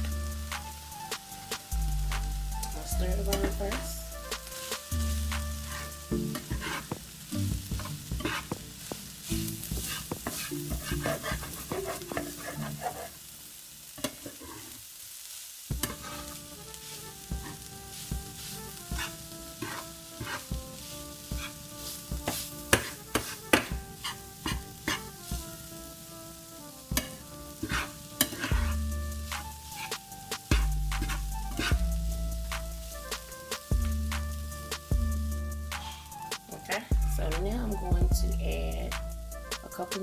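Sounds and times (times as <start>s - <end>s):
meat sizzling: 0.0s - 40.0s
spoon scraping a pan: 2.6s - 14.8s, 15.8s - 25.6s, 26.9s - 31.9s, 35.8s - 36.4s.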